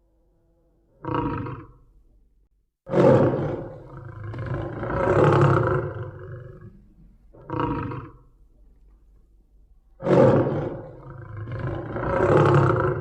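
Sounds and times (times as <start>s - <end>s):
lion roaring: 1.0s - 1.8s, 2.9s - 6.7s, 10.0s - 13.0s.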